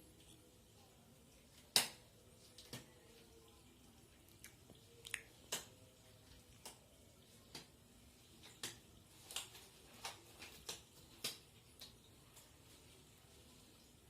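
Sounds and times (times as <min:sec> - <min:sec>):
small objects clicking and tapping: 0:08.4 - 0:12.5.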